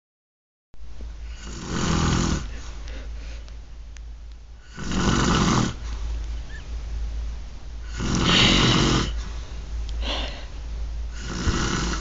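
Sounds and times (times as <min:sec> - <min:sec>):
woman snoring: 0:01.3 - 0:02.5, 0:04.6 - 0:05.8, 0:07.8 - 0:09.2, 0:11.1 - 0:12.0.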